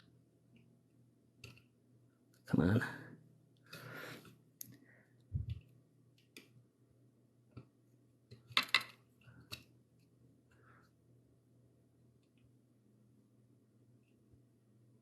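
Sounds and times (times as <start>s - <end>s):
small clicks and taps: 1.4s - 1.7s, 5.4s - 6.6s, 7.5s - 10.6s.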